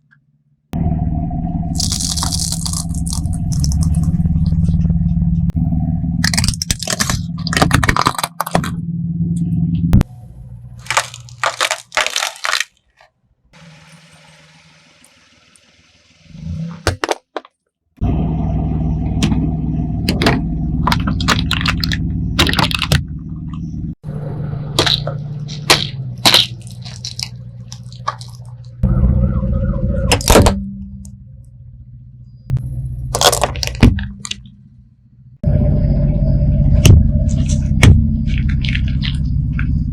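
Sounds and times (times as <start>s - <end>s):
car engine and tyres rumbling: 0.6s - 17.2s, 17.9s - 39.9s
objects cracking under tyres: 1.8s - 5.0s, 6.2s - 8.8s, 10.8s - 13.2s, 20.1s - 23.7s, 24.7s - 28.8s, 33.1s - 34.6s, 37.2s - 39.9s.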